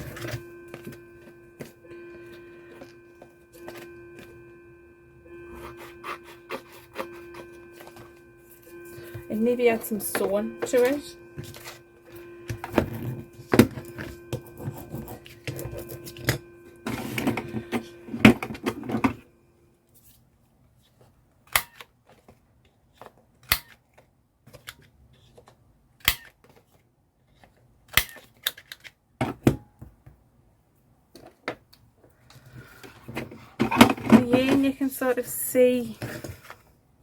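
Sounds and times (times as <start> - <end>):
paper and tools handled: 5.5 - 9.3, 10.6 - 19.1.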